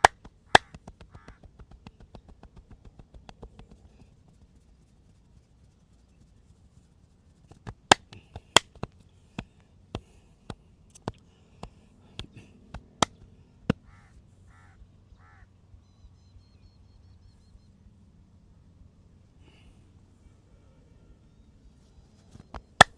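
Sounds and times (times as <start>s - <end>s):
hands slapping head and back: 0.0s - 0.8s.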